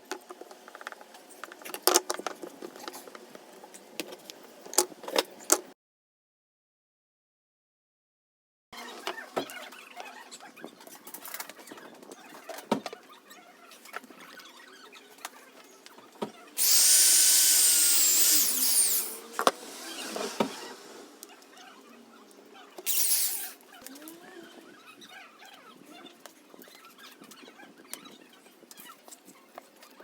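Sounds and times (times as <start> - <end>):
power drill whining: 16.6 - 21.2, 22.8 - 23.6.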